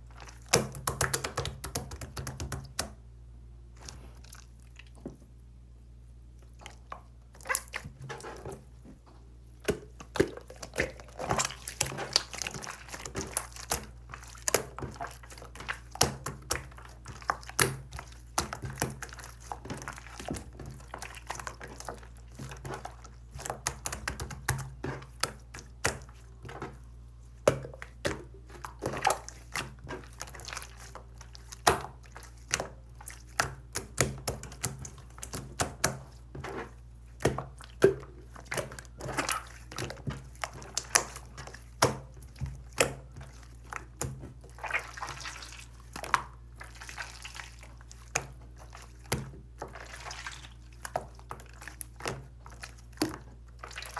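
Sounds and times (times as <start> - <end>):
low steady hum: 0.0 - 53.9.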